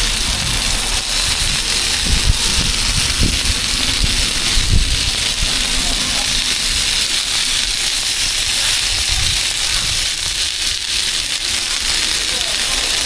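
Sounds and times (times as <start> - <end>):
food sizzling in hot oil: 0.0 - 13.0.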